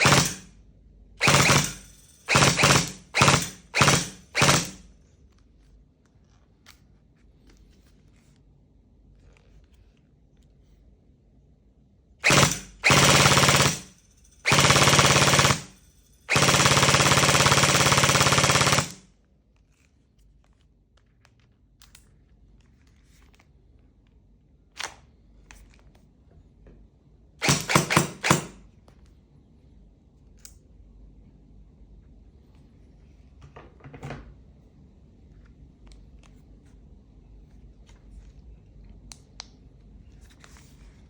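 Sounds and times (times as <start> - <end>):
gel blaster firing bursts: 0.0 - 0.4, 1.2 - 4.8, 12.2 - 13.9.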